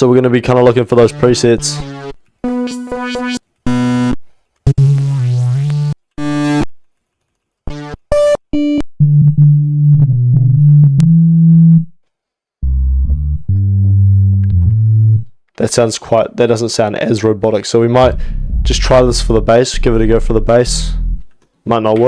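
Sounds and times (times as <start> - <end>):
synthesizer melody snatches: 1.0 - 4.1, 4.7 - 6.7, 18.0 - 21.3
low bass synth: 18.0 - 21.3.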